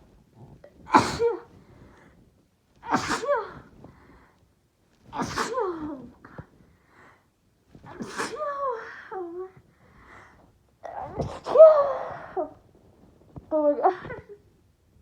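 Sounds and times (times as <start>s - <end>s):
woman sneezing: 0.9s - 1.5s, 2.8s - 3.7s, 5.2s - 5.9s, 8.0s - 8.6s.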